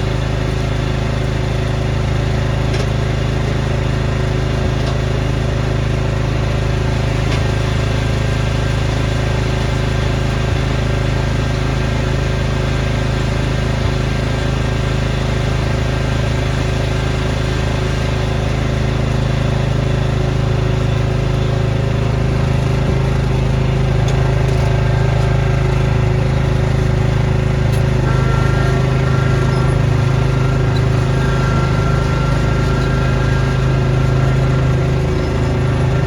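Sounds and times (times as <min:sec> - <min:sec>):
snowblower engine running: 0:00.0 - 0:36.0
faint high whine: 0:22.8 - 0:36.0.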